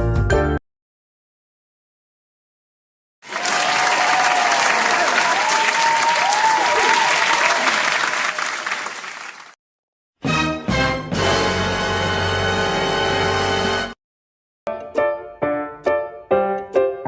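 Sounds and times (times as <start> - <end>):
music: 0.0 - 0.6, 10.2 - 14.0, 14.7 - 17.0
crowd clapping: 3.2 - 9.6
voices cheering: 3.2 - 9.6.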